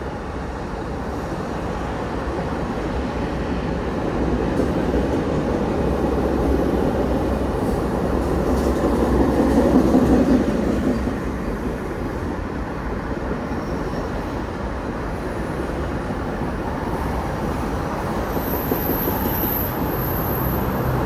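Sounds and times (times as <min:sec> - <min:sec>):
train wheels rumbling on rail: 0:00.0 - 0:21.0
high wheel squeal: 0:18.2 - 0:21.0.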